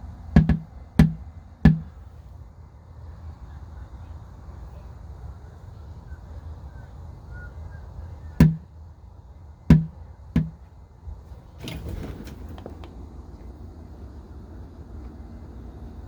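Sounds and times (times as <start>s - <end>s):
hammer knocks: 0.4s - 1.9s, 8.4s - 8.7s, 9.7s - 10.6s.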